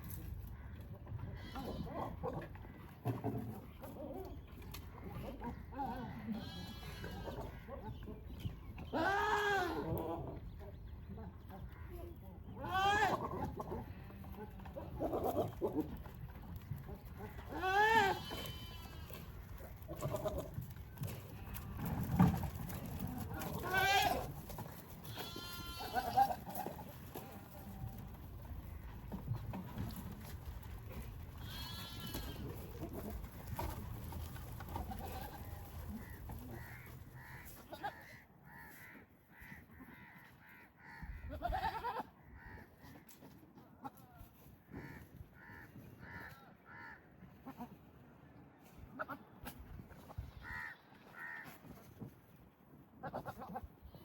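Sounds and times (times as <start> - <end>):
goat bleating: 1.3 - 2.3, 5.9 - 7.6, 8.9 - 10.4, 12.5 - 16.0, 17.1 - 28.2, 29.8 - 42.6, 49.0 - 49.4, 53.0 - 54.0.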